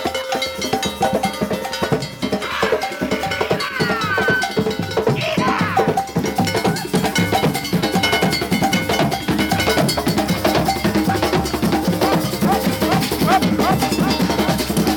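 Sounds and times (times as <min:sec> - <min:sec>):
percussion-heavy music: 0:00.0 - 0:14.9.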